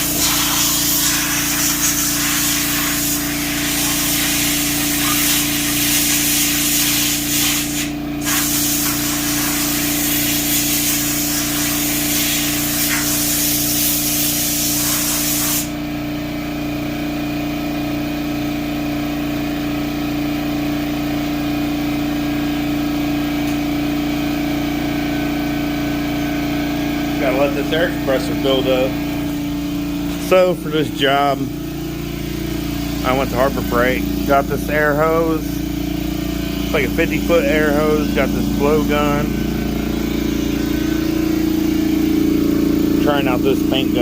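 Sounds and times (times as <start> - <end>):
compressed air hissing: 0.0 - 15.8
air compressor humming: 0.0 - 44.0.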